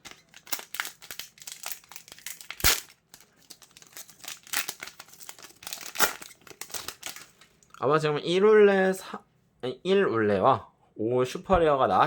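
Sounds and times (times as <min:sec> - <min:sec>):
foil wrapper crinkling: 0:00.0 - 0:07.7.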